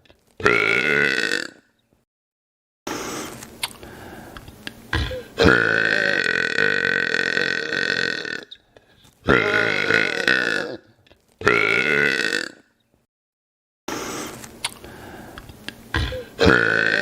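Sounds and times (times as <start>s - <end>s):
man burping: 0.4s - 1.6s, 4.9s - 8.5s, 9.2s - 12.7s, 15.9s - 17.0s.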